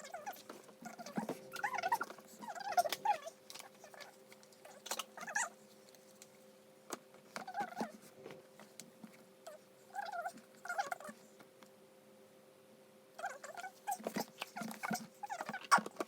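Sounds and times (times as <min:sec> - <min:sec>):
squeaks of rubbing: 0:00.0 - 0:05.6, 0:07.4 - 0:08.1, 0:13.2 - 0:16.0
faint steady hum: 0:00.0 - 0:16.0.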